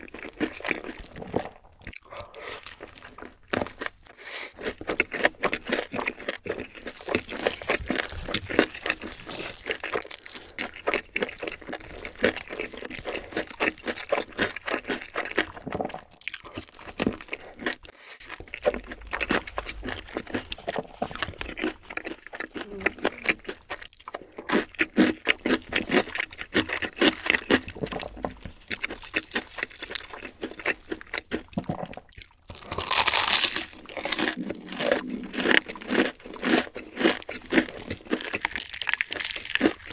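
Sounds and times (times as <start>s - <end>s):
person chewing crunchy food: 0.0s - 39.9s.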